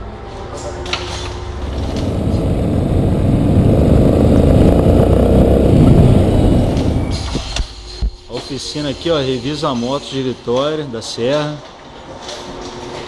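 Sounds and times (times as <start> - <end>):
motorcycle engine running: 1.5 - 7.6.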